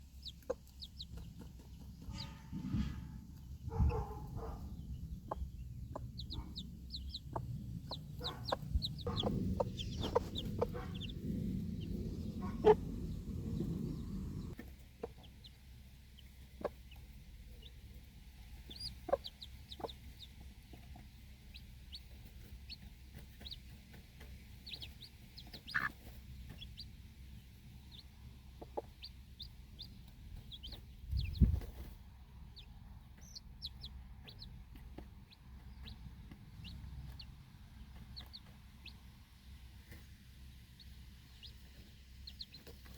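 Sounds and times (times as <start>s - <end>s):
low rumbling noise: 0.0s - 14.6s, 24.6s - 38.9s
hen clucking: 0.0s - 15.6s, 18.4s - 39.1s, 40.8s - 42.9s
chicks peeping: 0.0s - 42.9s.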